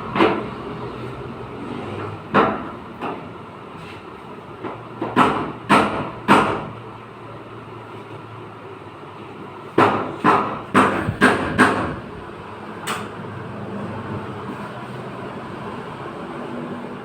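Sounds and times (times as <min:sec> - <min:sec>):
hammer knocking on sheet metal: 0:04.6 - 0:06.8, 0:09.8 - 0:12.1.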